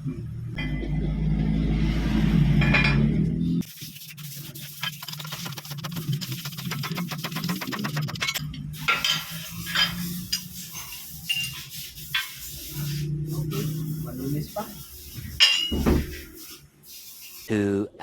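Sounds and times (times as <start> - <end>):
metal tools clinking: 8.1 - 12.4, 15.4 - 15.8.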